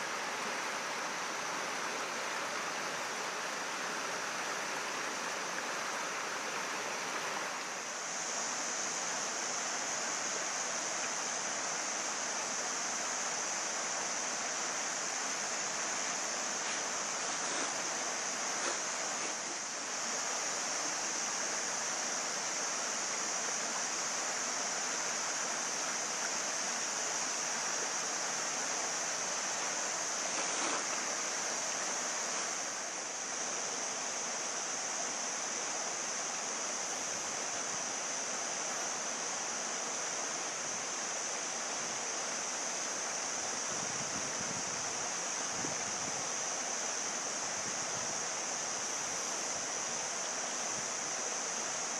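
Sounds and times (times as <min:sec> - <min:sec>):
stream rushing: 0:00.0 - 0:51.9.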